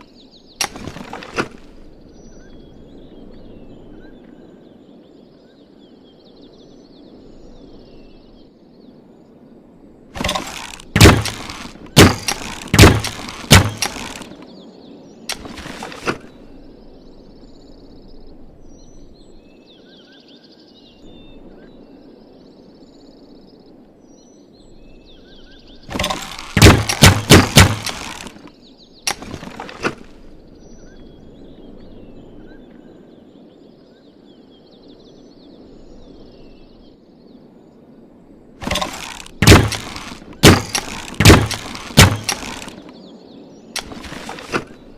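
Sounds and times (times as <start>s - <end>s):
birds chirping: 0.0s - 44.9s
crossbow wooden clacks: 0.6s - 1.7s, 10.2s - 14.4s, 15.3s - 16.3s, 25.9s - 28.5s, 29.1s - 30.2s, 38.6s - 42.9s, 43.8s - 44.8s.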